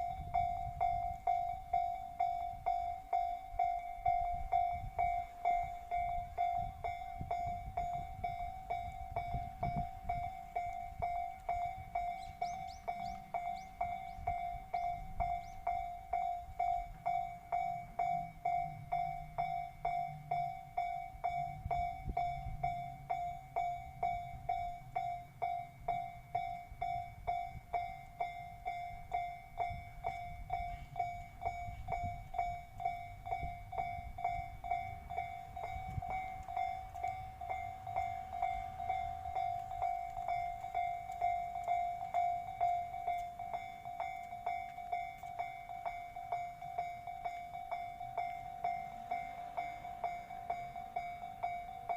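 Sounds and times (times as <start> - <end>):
level crossing bell ringing: 0.0 - 51.9
train rumbling past: 0.0 - 51.9.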